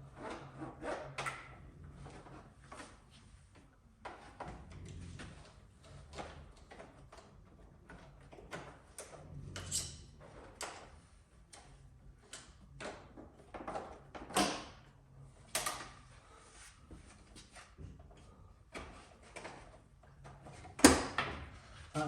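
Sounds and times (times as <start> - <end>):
hands clicking and scraping cable: 0.2 - 14.6.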